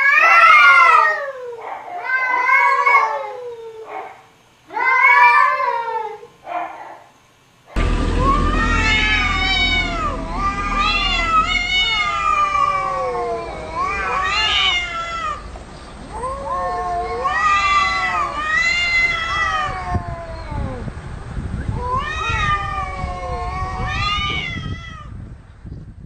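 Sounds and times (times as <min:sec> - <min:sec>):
low steady hum: 0:07.8 - 0:17.0.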